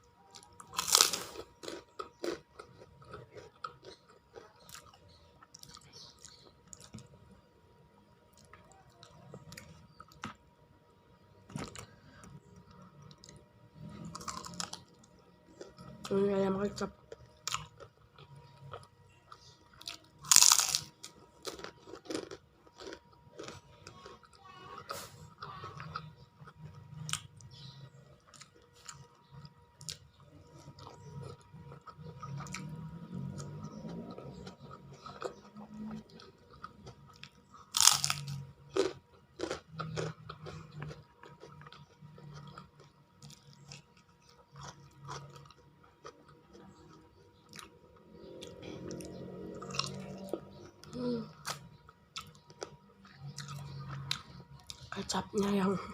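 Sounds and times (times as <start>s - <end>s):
person crunching and chewing: 0.2s - 7.2s, 11.4s - 16.2s, 16.8s - 55.0s.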